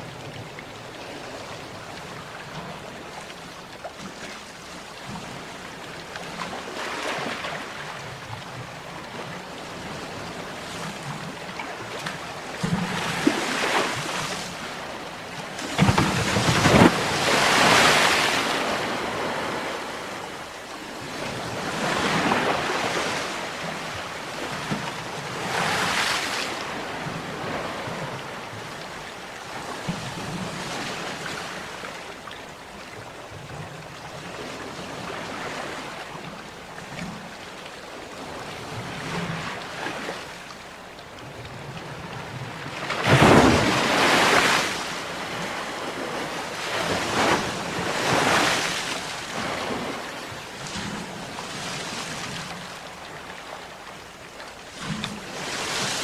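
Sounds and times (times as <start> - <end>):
sea waves breaking: 4.0 - 8.2, 8.9 - 28.7, 41.6 - 56.0.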